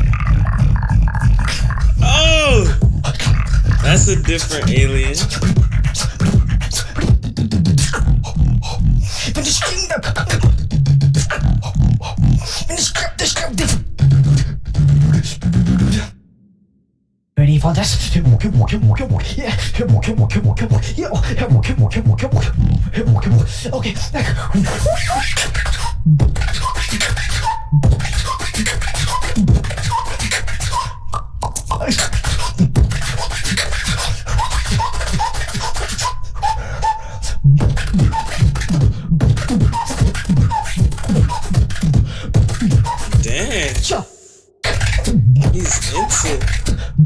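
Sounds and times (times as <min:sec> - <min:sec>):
beatboxing: 0:00.0 - 0:16.1, 0:18.2 - 0:47.0
sliding vocal sound effects: 0:00.5 - 0:03.1, 0:03.7 - 0:05.4, 0:43.2 - 0:44.4.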